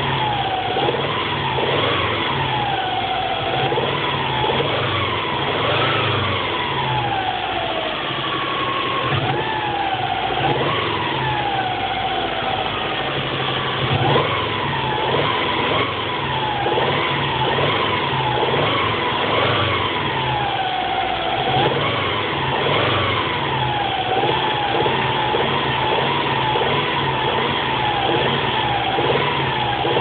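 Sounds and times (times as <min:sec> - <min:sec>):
engine knocking: 0:00.0 - 0:30.0
engine revving with whine: 0:00.0 - 0:30.0.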